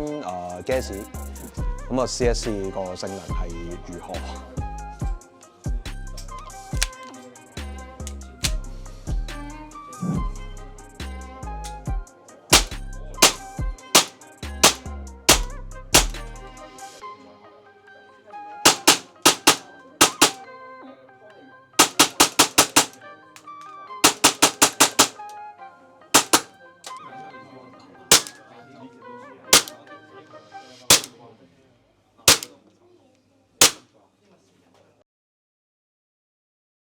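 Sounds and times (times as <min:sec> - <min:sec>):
airsoft pistol shots: 0:06.7 - 0:07.0, 0:12.6 - 0:13.4, 0:14.0 - 0:16.3, 0:18.7 - 0:20.4, 0:21.8 - 0:23.0, 0:24.0 - 0:25.2, 0:26.2 - 0:27.0, 0:28.1 - 0:28.4, 0:29.6 - 0:29.8, 0:30.9 - 0:31.1, 0:32.3 - 0:32.5, 0:33.6 - 0:33.8.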